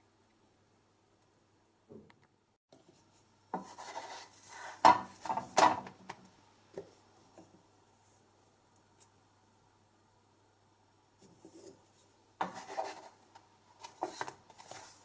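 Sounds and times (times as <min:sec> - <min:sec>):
flatbread scraping on griddle: 0:03.6 - 0:05.7, 0:12.4 - 0:13.2.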